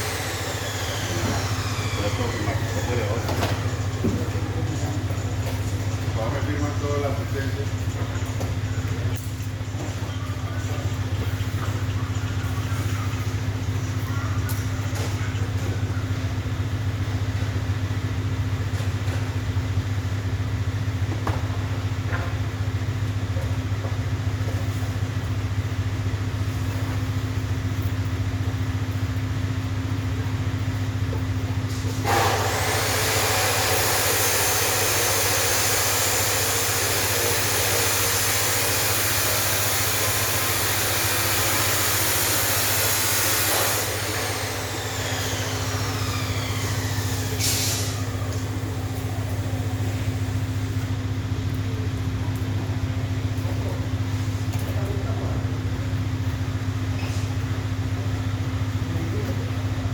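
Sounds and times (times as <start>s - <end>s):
engine idling: 0.0s - 59.9s
loud steady hiss: 31.8s - 50.8s.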